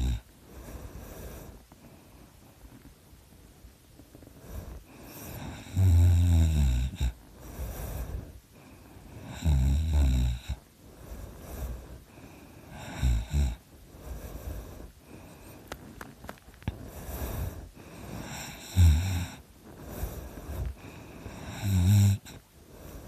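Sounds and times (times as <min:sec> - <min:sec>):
person snoring: 0:00.0 - 0:00.3, 0:04.3 - 0:08.4, 0:09.1 - 0:10.6, 0:12.6 - 0:13.6, 0:16.9 - 0:23.0
soft breathing: 0:00.0 - 0:23.0.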